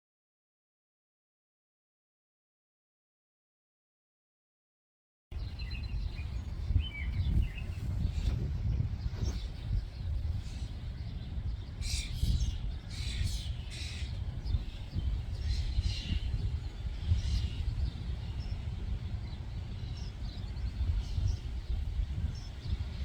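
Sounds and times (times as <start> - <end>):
birds chirping: 5.3 - 23.0
low outdoor rumble: 5.3 - 23.0.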